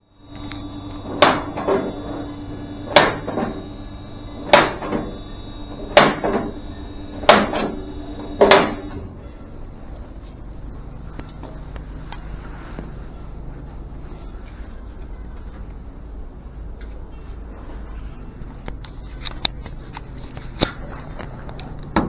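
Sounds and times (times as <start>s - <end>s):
steady hum: 0.0s - 22.0s
sharp knocks: 0.4s - 9.0s.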